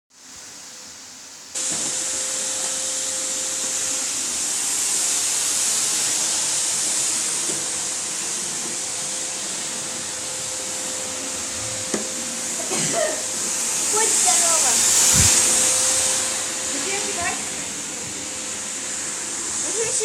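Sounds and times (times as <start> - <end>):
vacuum cleaner running: 0.3 - 20.0
vacuum cleaner switch: 1.6 - 2.8.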